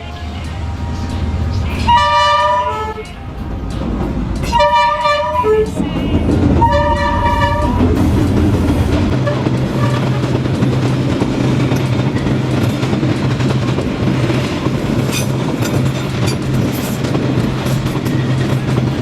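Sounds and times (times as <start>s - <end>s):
low train rumble: 0.0s - 19.0s
train horn blasts: 1.6s - 3.4s, 4.4s - 8.3s, 9.1s - 10.4s.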